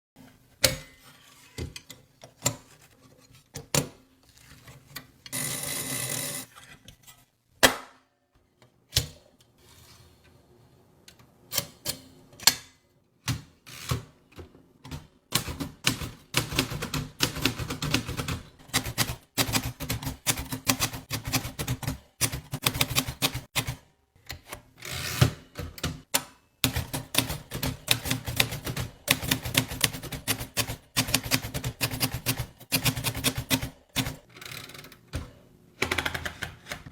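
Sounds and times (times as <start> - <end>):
typewriter typing: 14.9 - 23.8, 25.9 - 34.3
typewriter rasping noise: 15.5 - 23.8.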